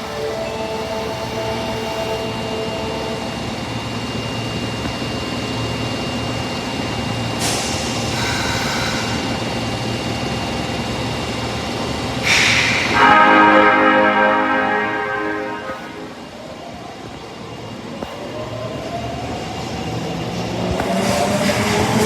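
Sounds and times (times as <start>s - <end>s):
subway train rumble: 0.0s - 22.0s
short hiss: 12.2s - 13.0s.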